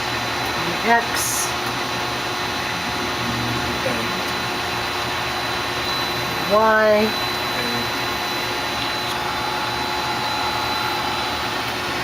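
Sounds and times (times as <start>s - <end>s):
lathe running: 0.0s - 12.0s
faint servo whine: 7.2s - 11.7s.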